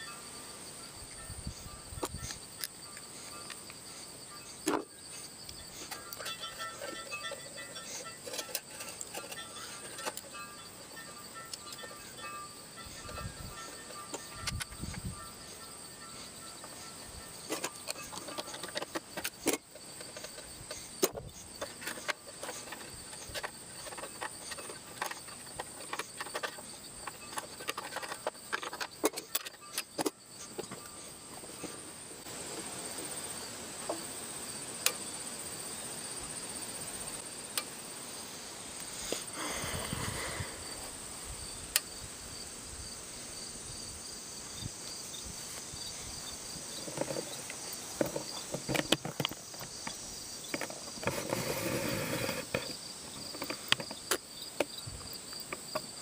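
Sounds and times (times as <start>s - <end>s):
high-pitched insect chirring: 0.0s - 31.8s.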